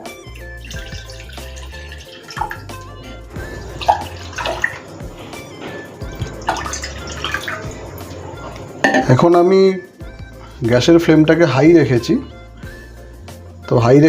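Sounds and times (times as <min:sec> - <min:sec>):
water pouring into a pot: 0:00.0 - 0:08.7
background music: 0:00.0 - 0:14.0.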